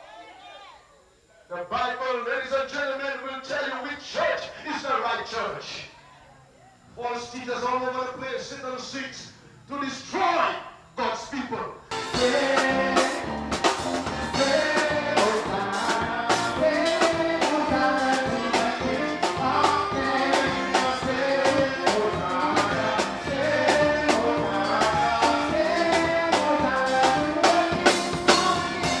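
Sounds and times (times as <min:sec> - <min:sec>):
person singing: 0:11.9 - 0:29.0
upbeat music with drum beat: 0:11.9 - 0:29.0.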